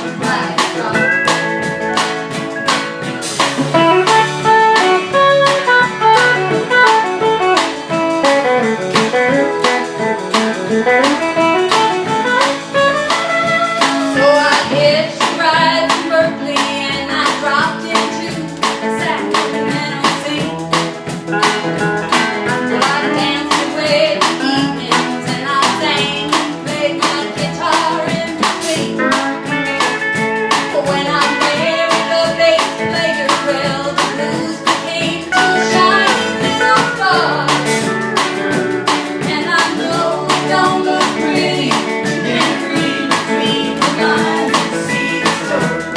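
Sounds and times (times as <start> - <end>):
bass: 0.0 - 45.9
country band playing: 0.0 - 45.9
drums: 0.0 - 45.9
electric lead guitar: 0.0 - 45.9
steel guitar: 0.0 - 45.9.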